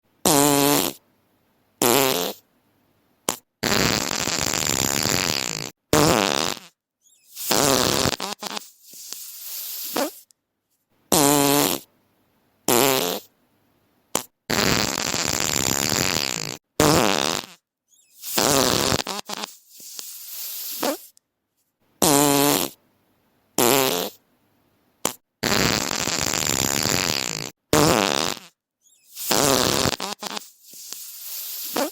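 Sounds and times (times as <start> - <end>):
fart sound effects: 0.2 - 1.0, 1.8 - 2.4, 3.3 - 10.2, 11.1 - 11.9, 12.7 - 13.3, 14.2 - 17.6, 18.2 - 21.1, 22.0 - 22.8, 23.6 - 24.2, 25.0 - 31.9.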